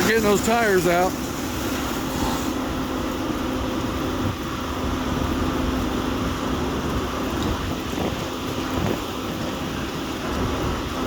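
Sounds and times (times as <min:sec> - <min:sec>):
hissing water spray: 0:00.0 - 0:04.6
low engine hum: 0:00.0 - 0:11.0.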